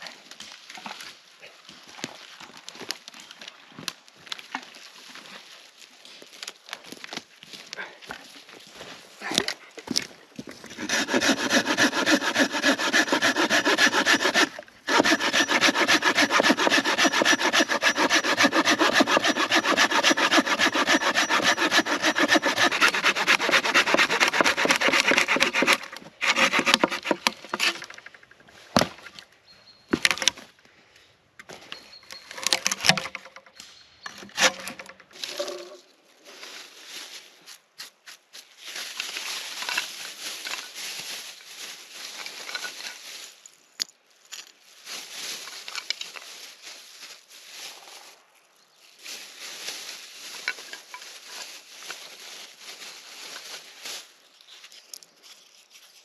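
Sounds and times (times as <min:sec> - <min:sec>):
hand saw cutting wood: 0:10.7 - 0:28.2, 0:32.4 - 0:33.3, 0:34.2 - 0:35.7.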